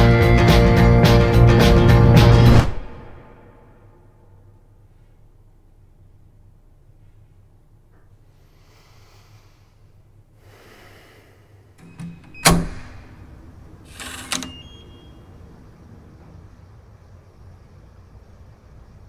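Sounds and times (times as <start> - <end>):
loud sharp bang: 2.4 - 4.3
clicks: 11.8 - 13.0, 13.9 - 15.0.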